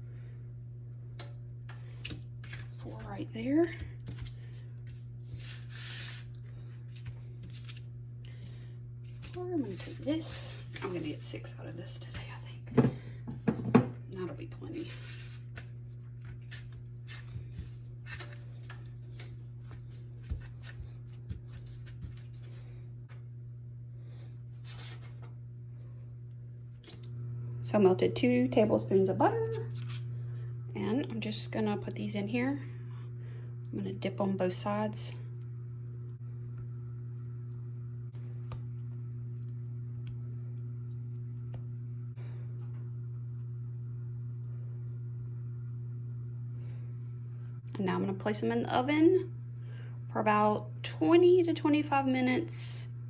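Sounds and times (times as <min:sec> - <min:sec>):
steady low hum: 0:00.0 - 0:53.0
scrape or rustle: 0:05.3 - 0:06.3.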